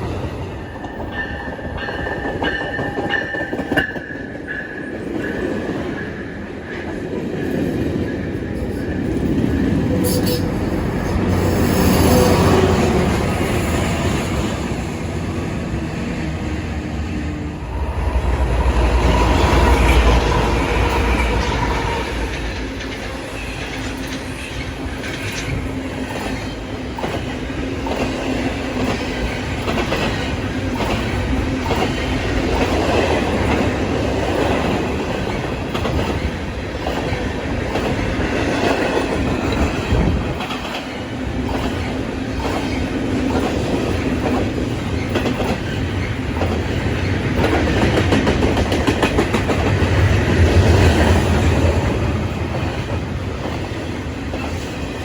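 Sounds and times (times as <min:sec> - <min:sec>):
train low hum: 0:00.0 - 0:55.0
train wheels clicking over rail joints: 0:17.8 - 0:55.0.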